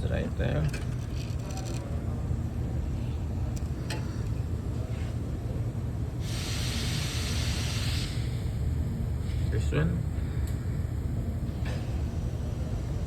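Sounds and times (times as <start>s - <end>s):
steady low hum: 0.0s - 13.0s
air tool compressed-air hiss: 6.2s - 8.5s.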